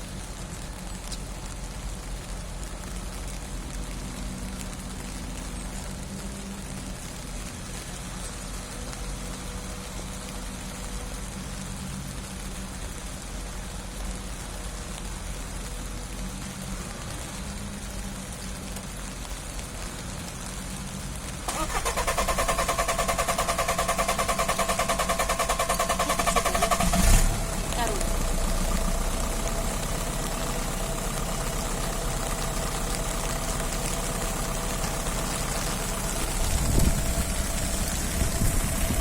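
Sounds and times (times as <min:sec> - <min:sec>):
starter motor cranking engine: 0:21.5 - 0:27.9.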